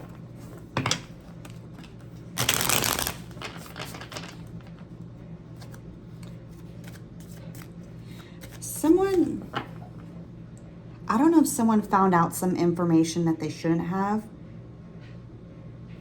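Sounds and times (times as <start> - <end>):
deck of cards shuffling: 1.5 - 4.3
cards clicking and tapping: 1.8 - 3.7.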